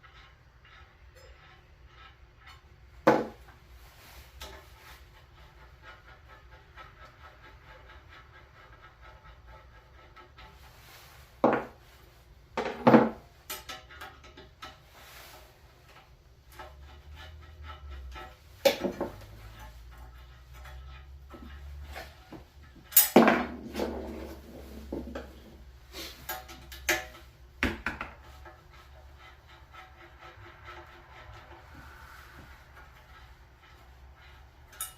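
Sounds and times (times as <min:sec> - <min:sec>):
heavy parts knocking and clunking: 0:00.0 - 0:03.7, 0:04.4 - 0:34.9.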